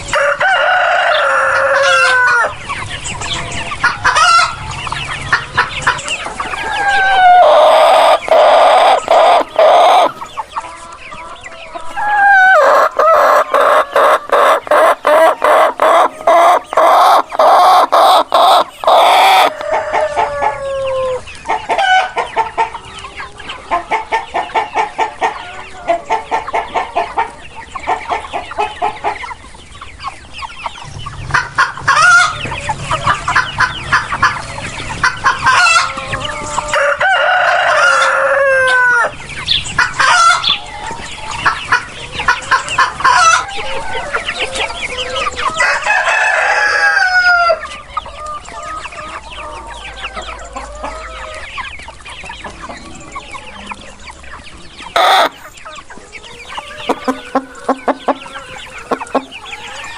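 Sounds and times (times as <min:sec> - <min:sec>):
chickens clucking: 0:00.0 - 0:59.9
rooster crowing: 0:00.1 - 0:02.6, 0:06.5 - 0:10.2, 0:11.9 - 0:14.4, 0:18.9 - 0:21.2, 0:35.6 - 0:39.1, 0:43.2 - 0:47.7, 0:56.2 - 0:59.9.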